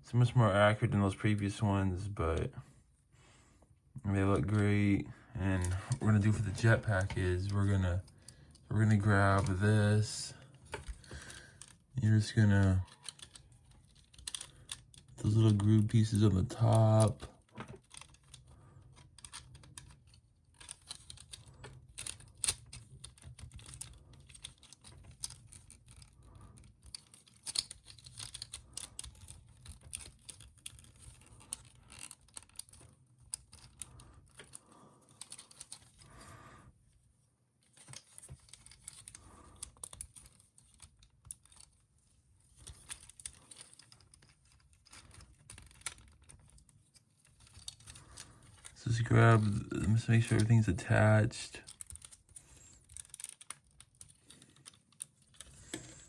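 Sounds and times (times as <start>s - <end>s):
plastic toy parts clicking: 12.6s - 36.0s, 37.6s - 41.8s, 42.5s - 48.8s, 51.6s - 56.0s.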